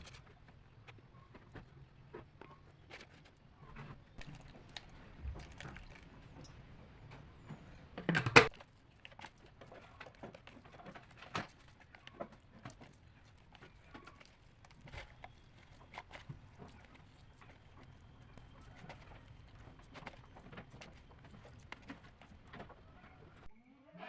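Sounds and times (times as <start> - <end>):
small objects clicking and knocking: 4.2 - 6.5.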